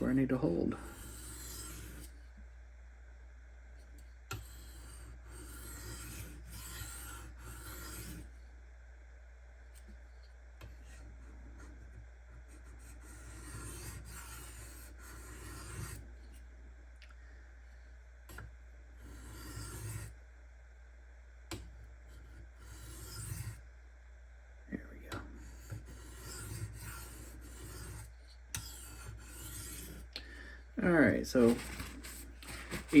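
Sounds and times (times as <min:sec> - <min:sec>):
knife scraping on whetstone: 0:00.1 - 0:02.2, 0:04.3 - 0:08.3, 0:12.8 - 0:16.4, 0:19.0 - 0:20.1, 0:22.1 - 0:23.6, 0:25.4 - 0:30.1, 0:31.4 - 0:33.0.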